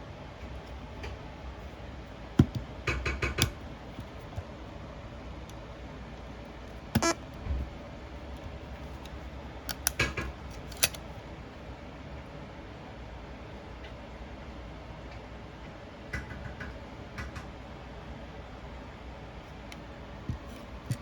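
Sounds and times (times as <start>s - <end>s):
cassette player plastic clicks: 8.4s - 11.1s.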